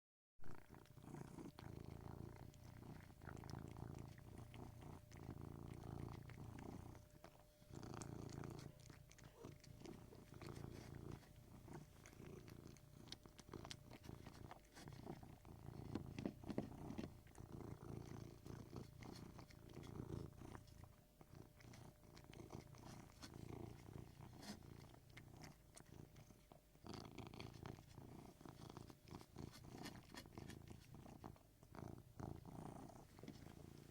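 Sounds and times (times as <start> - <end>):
cat purring: 0.4 - 33.9.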